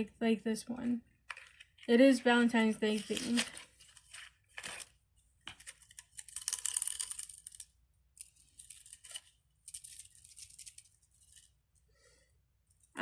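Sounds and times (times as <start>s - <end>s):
crinkly plastic rustling: 2.8s - 7.7s.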